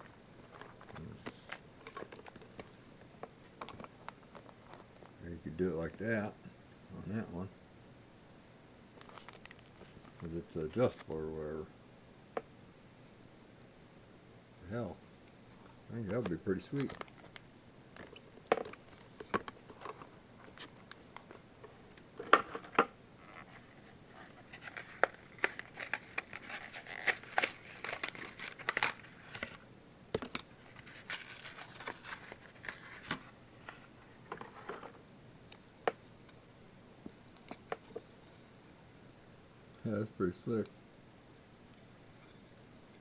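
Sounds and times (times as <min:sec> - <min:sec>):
crinkly rustling: 0:00.0 - 0:02.8, 0:03.4 - 0:05.2, 0:09.0 - 0:11.0, 0:15.5 - 0:29.6, 0:30.5 - 0:35.0.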